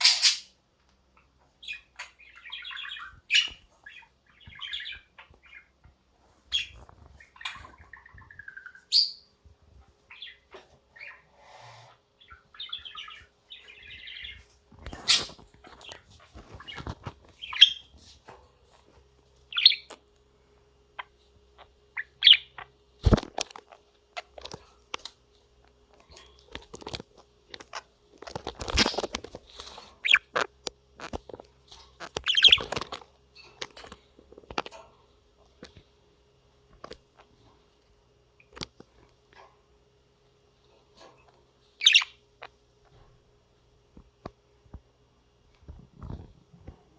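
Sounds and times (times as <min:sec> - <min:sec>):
budgerigar chirping: 0:00.0 - 0:00.6, 0:01.6 - 0:05.7, 0:06.5 - 0:09.3, 0:12.2 - 0:14.4, 0:19.5 - 0:20.0, 0:21.0 - 0:22.8, 0:30.0 - 0:31.1, 0:32.0 - 0:32.8, 0:41.8 - 0:42.5
faint steady hum: 0:00.0 - 0:46.9.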